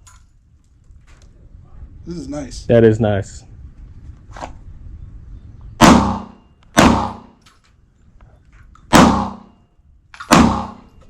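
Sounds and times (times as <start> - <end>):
gunshots with echo: 5.8 - 7.4, 8.9 - 9.6, 10.3 - 10.9.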